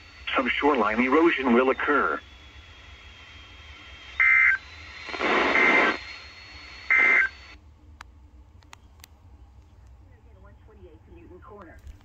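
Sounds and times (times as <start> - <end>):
radio receiver hiss: 0.0 - 7.6.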